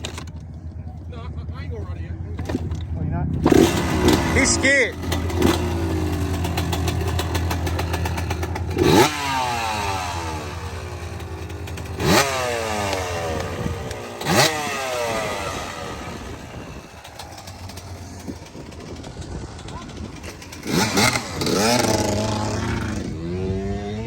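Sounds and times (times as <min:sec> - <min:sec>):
motorbike engine revving: 0:00.0 - 0:24.0.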